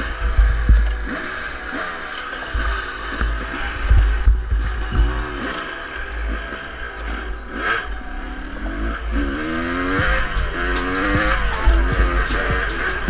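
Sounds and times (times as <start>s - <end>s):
dirt bike engine revving: 0.0s - 13.0s
heavy low rumble: 2.5s - 7.5s, 8.5s - 13.0s.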